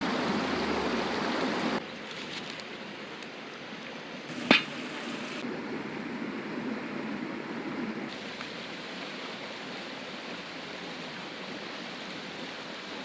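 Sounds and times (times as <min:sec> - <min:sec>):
river water rushing: 0:00.0 - 0:01.8
sharp knock: 0:04.4 - 0:04.8.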